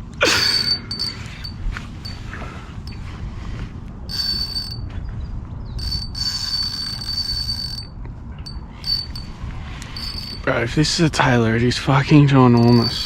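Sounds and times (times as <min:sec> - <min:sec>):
fishing reel drag buzzing: 0:00.4 - 0:02.3, 0:04.1 - 0:04.8, 0:05.8 - 0:10.5, 0:12.6 - 0:13.0.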